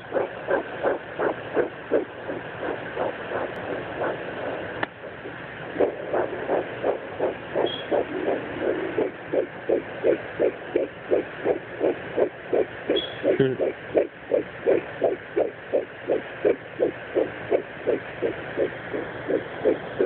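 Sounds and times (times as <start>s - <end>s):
fetal heartbeat whooshing pulses: 0.0s - 20.0s.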